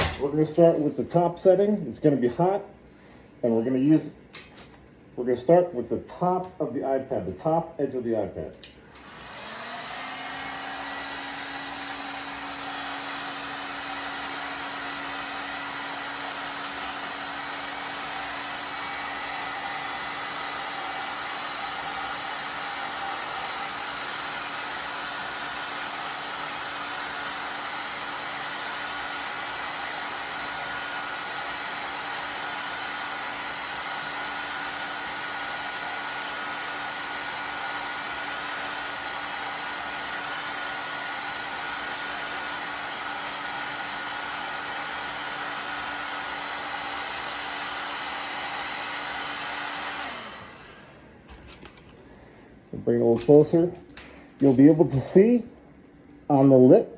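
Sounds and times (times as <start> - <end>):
heat gun motor blowing: 0.0 - 0.3, 8.7 - 50.9.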